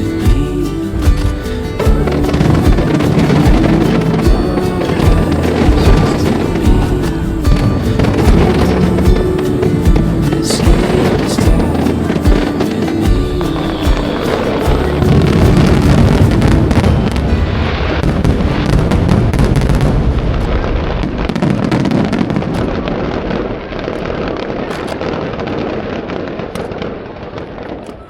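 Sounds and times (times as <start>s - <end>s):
fireworks bursts and crackling: 0.0s - 28.0s
low firework booms: 10.7s - 28.0s.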